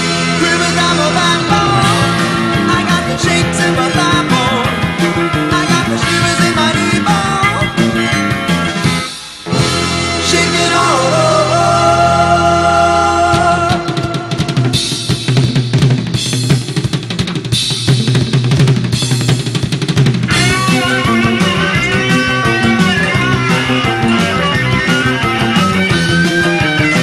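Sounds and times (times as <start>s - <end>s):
bass: 0.0s - 27.0s
drum kit: 0.0s - 27.0s
rock and roll band music: 0.0s - 27.0s
bending melodic line: 20.3s - 27.0s.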